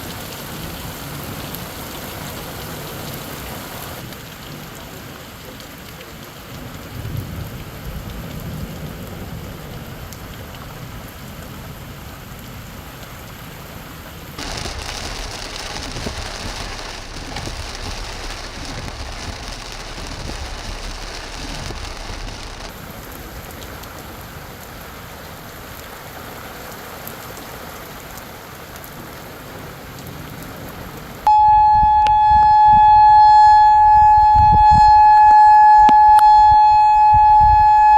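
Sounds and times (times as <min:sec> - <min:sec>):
heavy rain falling: 0:00.0 - 0:37.9
tornado warning siren: 0:14.4 - 0:22.7, 0:31.3 - 0:37.9
thunder rumbling: 0:14.4 - 0:22.8, 0:31.3 - 0:37.9.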